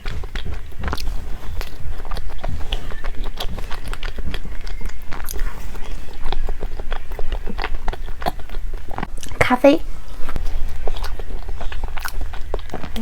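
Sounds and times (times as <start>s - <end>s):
low steady hum: 0.0s - 13.0s
person chewing and biting: 0.0s - 13.0s.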